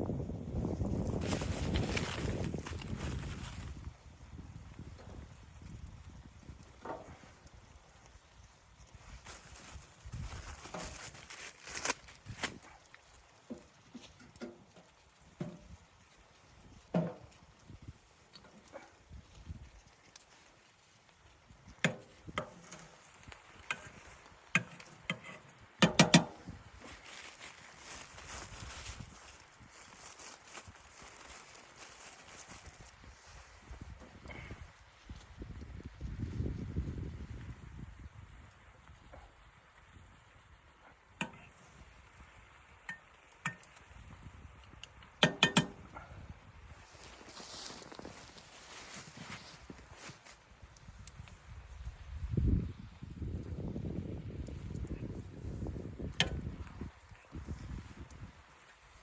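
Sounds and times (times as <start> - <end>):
sharp knocks and clunks: 24.6 - 26.4.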